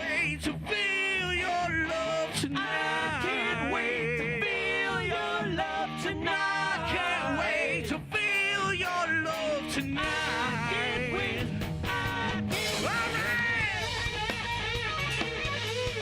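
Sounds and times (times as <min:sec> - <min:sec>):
bending lead guitar line: 0:00.0 - 0:16.0
rock band playing: 0:07.5 - 0:16.0.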